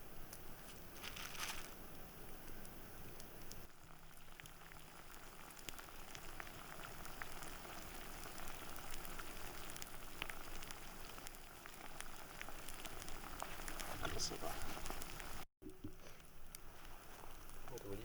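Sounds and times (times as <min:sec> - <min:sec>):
crackles and pops: 0:00.0 - 0:18.0
food sizzling: 0:00.8 - 0:15.5, 0:16.3 - 0:18.0.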